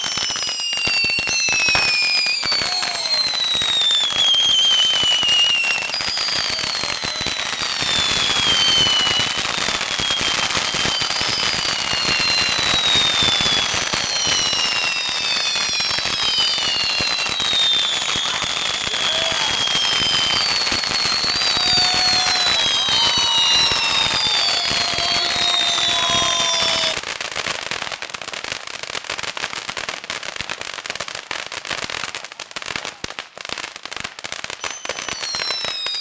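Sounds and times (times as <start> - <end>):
fireworks whistles falling in pitch: 0.0 - 27.0, 34.4 - 36.0
fireworks crackling: 0.0 - 36.0.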